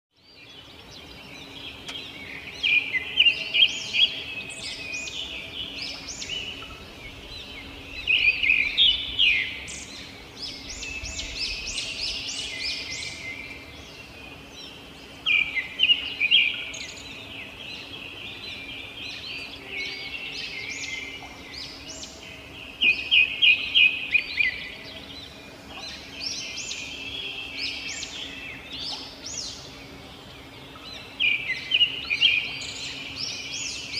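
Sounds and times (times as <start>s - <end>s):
robin singing: 0.2s - 33.9s.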